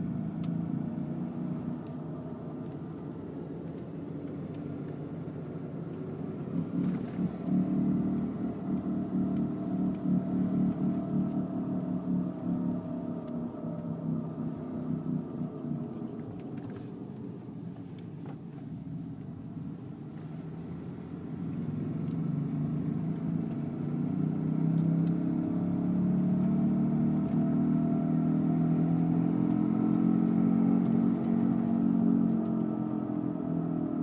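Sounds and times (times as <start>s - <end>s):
wheel hub drone: 0.0s - 18.8s.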